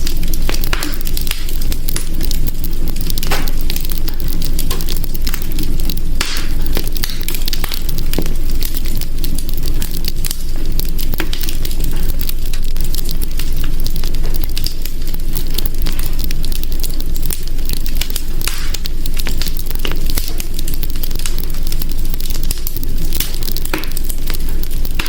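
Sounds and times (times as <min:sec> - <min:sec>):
fire crackling and popping: 0:00.0 - 0:25.0
low fire rumble: 0:00.0 - 0:25.0.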